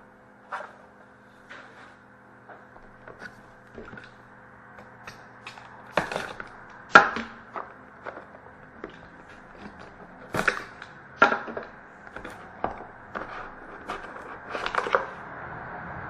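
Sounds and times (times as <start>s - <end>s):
faint electrical hum: 0.0s - 16.0s
cardboard box rustling and scraping: 2.8s - 4.2s, 5.9s - 6.7s, 7.6s - 10.9s, 11.6s - 15.2s.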